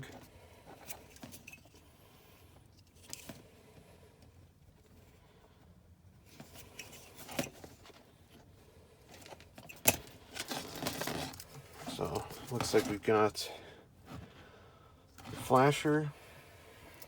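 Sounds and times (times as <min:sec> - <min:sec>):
light rustling of wiring: 0:09.1 - 0:13.2.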